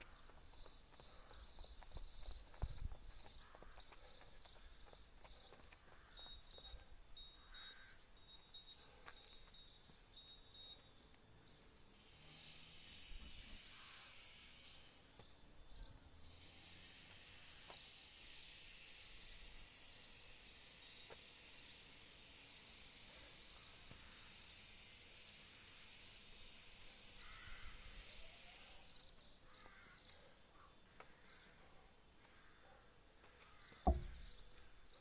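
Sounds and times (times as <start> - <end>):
faint bird calls: 3.3 - 9.5, 27.2 - 34.7.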